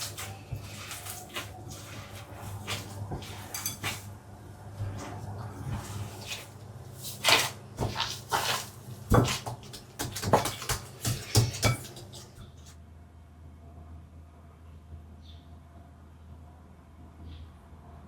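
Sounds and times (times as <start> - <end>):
kitchen items knocking and clattering: 2.1 - 4.1, 7.1 - 12.7.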